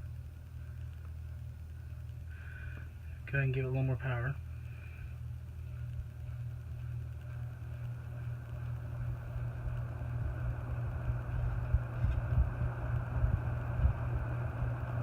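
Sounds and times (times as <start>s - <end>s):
ceiling fan motor humming: 0.0s - 15.0s
rush of air from fan blades: 4.4s - 15.0s.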